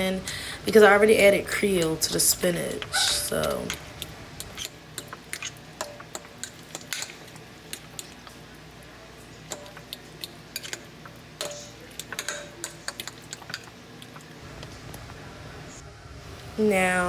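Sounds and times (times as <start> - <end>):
utensils clinking against a bowl: 1.7 - 14.4.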